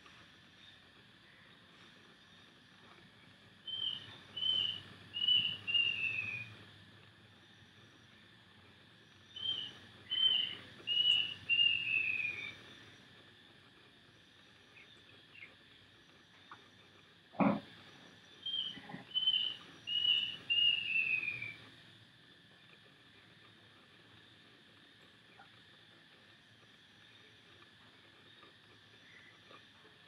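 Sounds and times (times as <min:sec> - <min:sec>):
bird whistling calls: 0:03.7 - 0:06.5, 0:09.3 - 0:12.6, 0:18.4 - 0:21.6.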